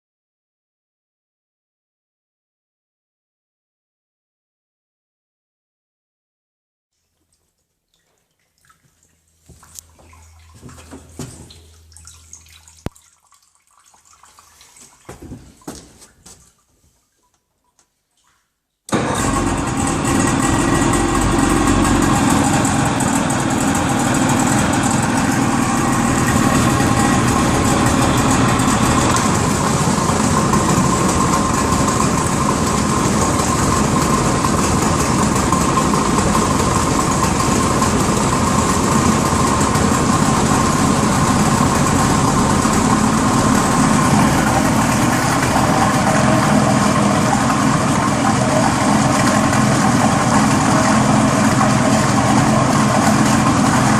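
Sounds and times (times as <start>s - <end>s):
outboard engine starting and idling: 9.7s - 12.9s, 18.9s - 53.9s.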